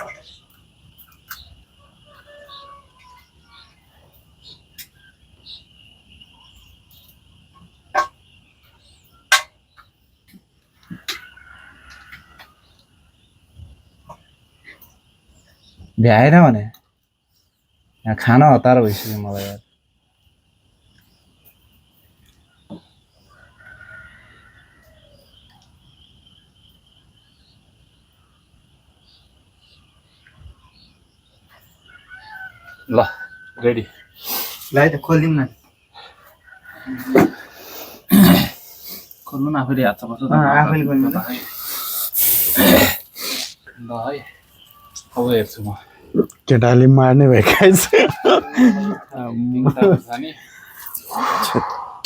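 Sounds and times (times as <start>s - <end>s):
high-pitched insect trill: 0.0s - 52.0s
rooster crowing: 1.8s - 3.6s, 11.1s - 12.6s, 23.3s - 25.3s, 31.8s - 34.0s, 36.3s - 38.4s, 47.4s - 52.0s.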